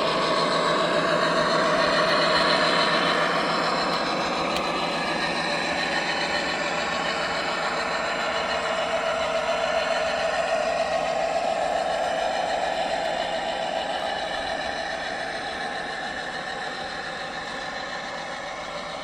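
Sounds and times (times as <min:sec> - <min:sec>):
model locomotive whirring: 0:00.0 - 0:19.0.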